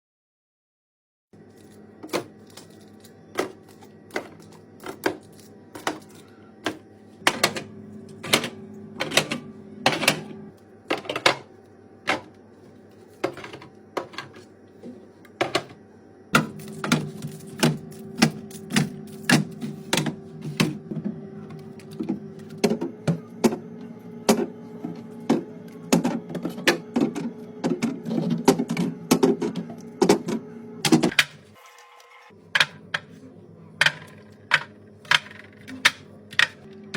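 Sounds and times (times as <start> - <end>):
steady low hum: 1.4 - 31.6, 32.3 - 36.9.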